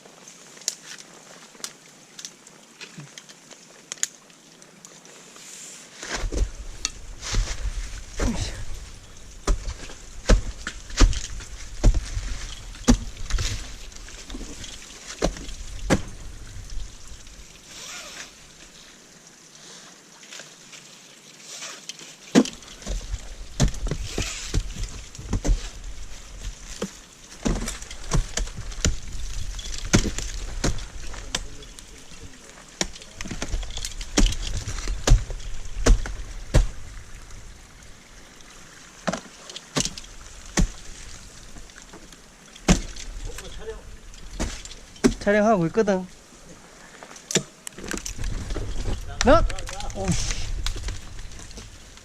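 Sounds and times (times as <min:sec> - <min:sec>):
ice axe chopping into ice: 0:09.4 - 0:16.2, 0:22.3 - 0:25.8, 0:26.8 - 0:31.6, 0:32.8 - 0:36.8, 0:39.0 - 0:41.2, 0:42.6 - 0:43.6, 0:44.3 - 0:45.4.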